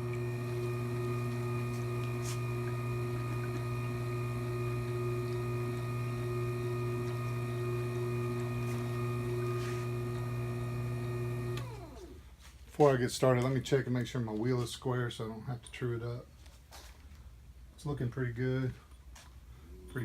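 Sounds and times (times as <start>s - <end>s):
wheel sharpener motor hum: 0.0s - 12.2s.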